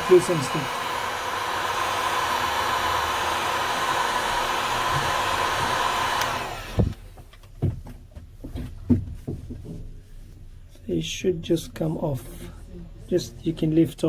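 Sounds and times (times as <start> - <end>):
heat gun blowing with a whine: 0.0 - 7.0
soft knocks: 6.7 - 10.1.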